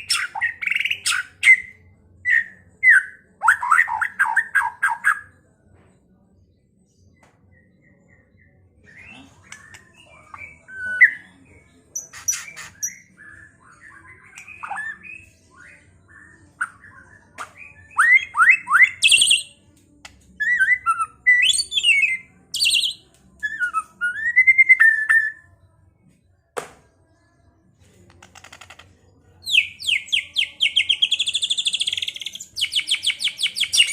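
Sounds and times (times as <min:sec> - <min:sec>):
bird singing whistled song: 0:07.5 - 0:11.4, 0:12.0 - 0:19.5, 0:20.4 - 0:25.4, 0:29.4 - 0:33.9.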